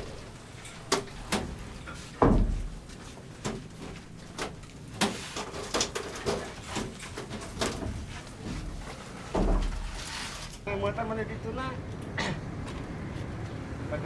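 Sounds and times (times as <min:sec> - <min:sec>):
building work knocks and clatters: 0:00.0 - 0:10.7
heavy thump: 0:02.2 - 0:02.8.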